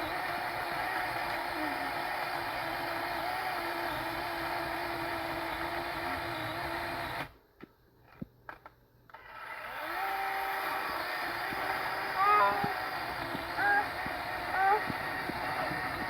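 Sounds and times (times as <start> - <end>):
motor humming: 0.0 - 7.3, 9.1 - 16.0.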